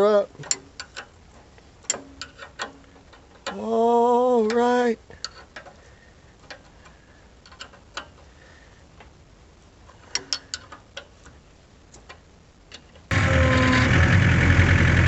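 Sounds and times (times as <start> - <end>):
light clicks and knocks: 0.4 - 3.7, 4.4 - 8.3
skid steer engine running: 13.1 - 15.0.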